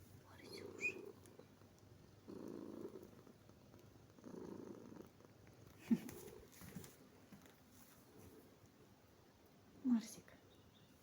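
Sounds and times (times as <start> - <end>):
cat purring: 0.0 - 8.7.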